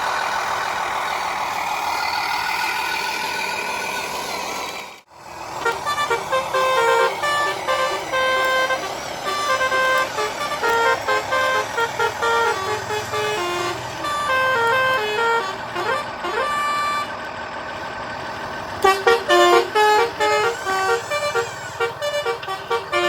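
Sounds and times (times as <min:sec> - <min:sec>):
truck engine running: 0:00.0 - 0:23.0
musical horn melody: 0:05.6 - 0:17.2, 0:18.8 - 0:23.0.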